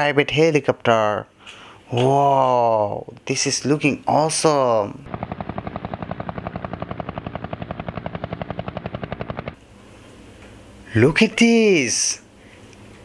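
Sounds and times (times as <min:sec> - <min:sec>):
faint hum: 0:00.0 - 0:13.0
helicopter rotor chopping: 0:05.0 - 0:09.8.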